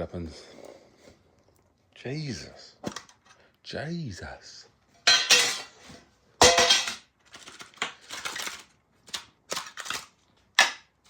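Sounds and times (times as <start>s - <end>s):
cards rustling and flicking: 7.2s - 10.8s.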